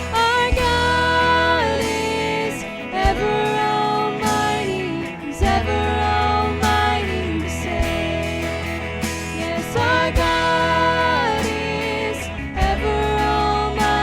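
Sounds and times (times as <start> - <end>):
guitar and bass: 0.0 - 14.0
drum hits: 7.7 - 11.6.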